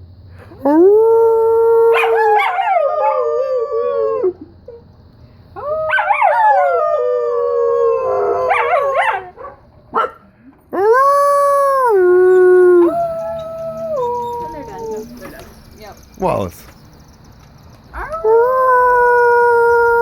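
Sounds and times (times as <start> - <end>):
dog howling: 0.6 - 4.9, 5.6 - 10.1, 10.7 - 15.6, 17.9 - 20.0.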